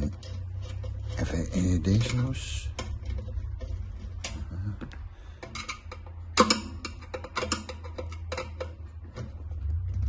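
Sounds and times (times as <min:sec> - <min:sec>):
wire connectors clicking: 0:01.9 - 0:10.0.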